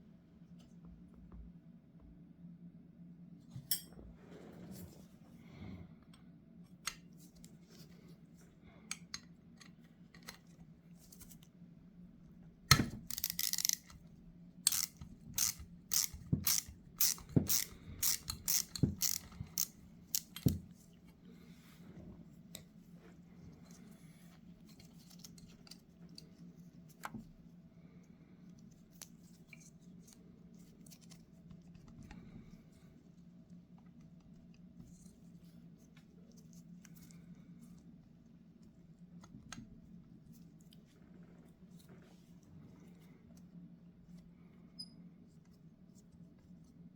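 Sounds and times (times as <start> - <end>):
faint steady hum: 0.0 - 46.9
metal parts clicking and tapping: 12.7 - 14.0, 14.7 - 20.6.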